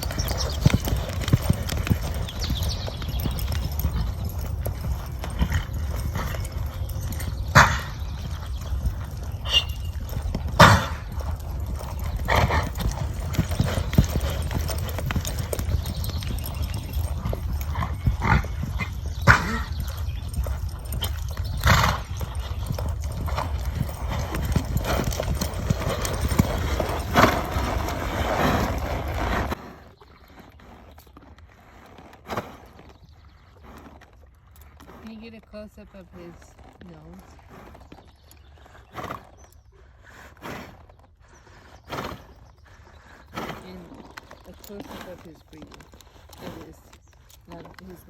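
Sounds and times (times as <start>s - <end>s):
horse coughing: 7.5s - 8.0s, 10.5s - 11.1s, 17.7s - 19.9s.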